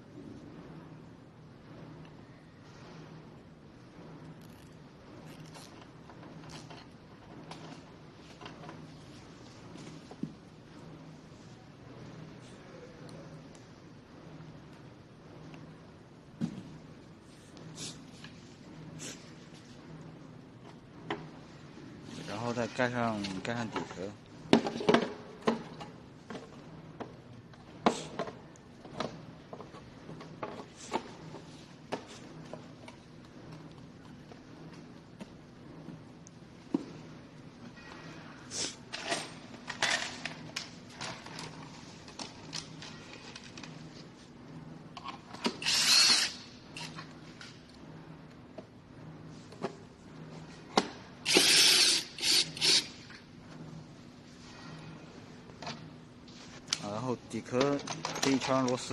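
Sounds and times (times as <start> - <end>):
electric screwdriver whirring: 45.6 - 47.0, 51.3 - 52.9.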